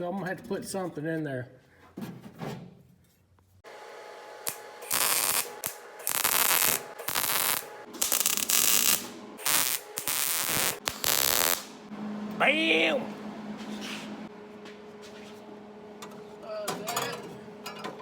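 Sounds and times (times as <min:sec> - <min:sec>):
welder crackling hiss: 0:04.4 - 0:11.8.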